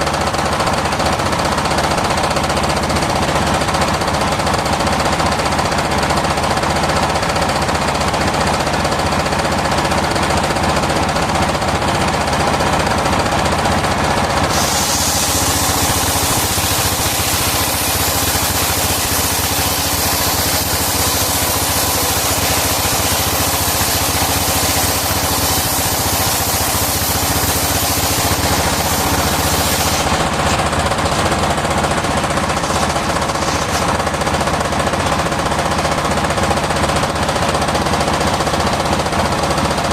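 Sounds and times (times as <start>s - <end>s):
circular sawmill clattering: 0.0s - 39.9s
saw blade hissing through timber: 14.4s - 34.6s.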